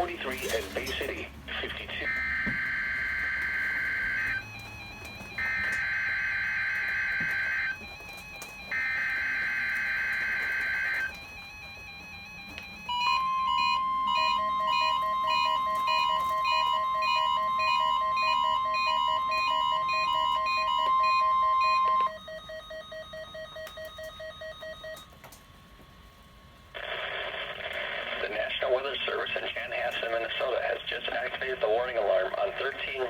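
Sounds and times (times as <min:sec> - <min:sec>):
radio announcer speaking: 0:00.0 - 0:02.3, 0:27.9 - 0:33.0
steady alarm tone: 0:00.0 - 0:25.0.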